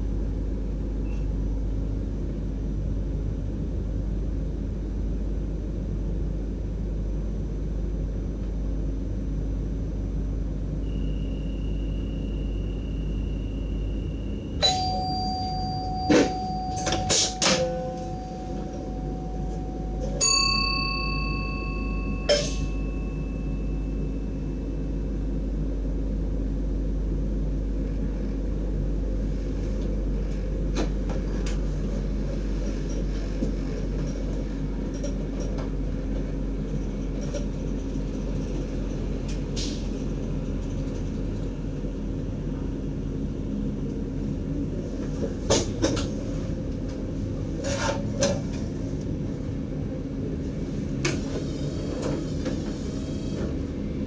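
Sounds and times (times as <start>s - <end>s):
train cab rumble: 0.0s - 54.0s
bell-like dings: 14.6s - 24.3s.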